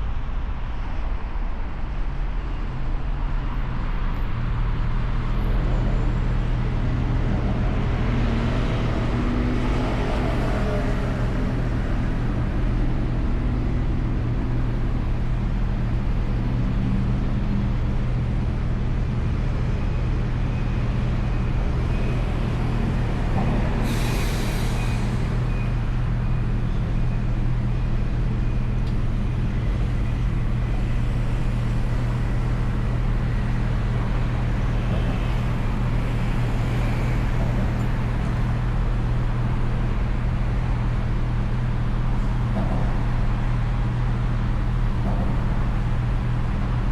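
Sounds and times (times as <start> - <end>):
city traffic noise: 0.0 - 46.9
air brakes hissing: 23.7 - 25.9.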